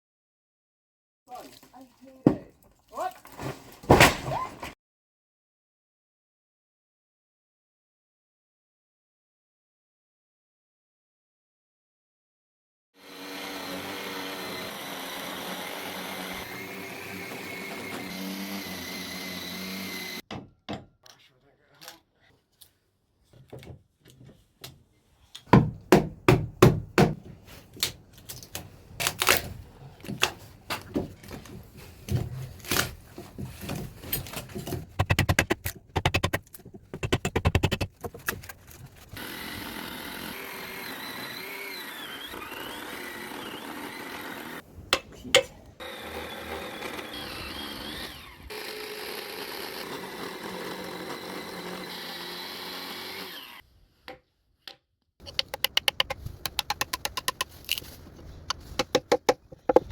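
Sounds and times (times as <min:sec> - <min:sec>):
power tool running: 0:13.0 - 0:20.2, 0:39.1 - 0:44.6, 0:45.8 - 0:53.6
tools knocking on wood: 0:20.2 - 0:21.0, 0:25.5 - 0:27.2, 0:34.8 - 0:38.2, 0:58.5 - 0:59.9.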